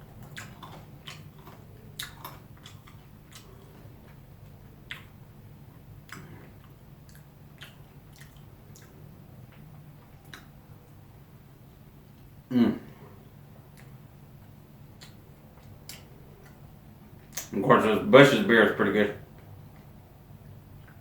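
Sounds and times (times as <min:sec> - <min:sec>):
person chewing food: 0:00.0 - 0:11.0, 0:12.1 - 0:17.5.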